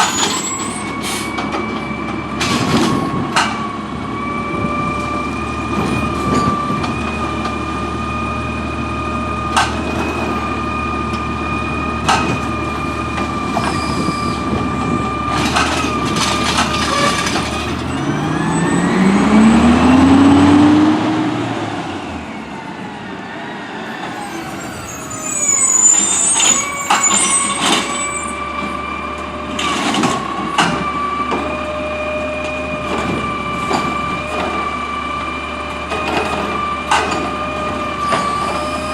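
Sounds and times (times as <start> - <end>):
garbage truck engine whining: 0.0 - 38.9.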